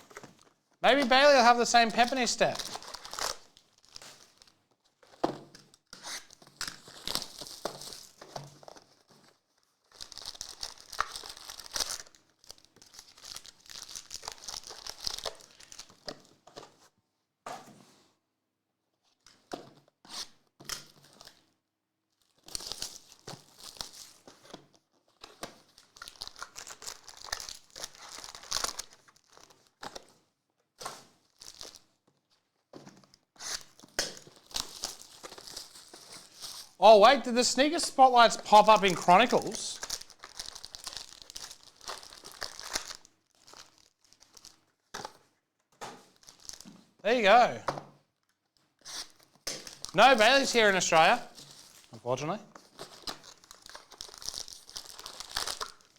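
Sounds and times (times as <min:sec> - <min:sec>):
plastic wrapping torn and crinkled: 0:02.0 - 0:05.2, 0:06.2 - 0:09.0, 0:09.8 - 0:16.1, 0:22.3 - 0:24.2, 0:25.6 - 0:30.1, 0:30.9 - 0:32.0, 0:33.6 - 0:36.8, 0:39.8 - 0:46.8, 0:49.0 - 0:50.8, 0:52.6 - 0:55.9.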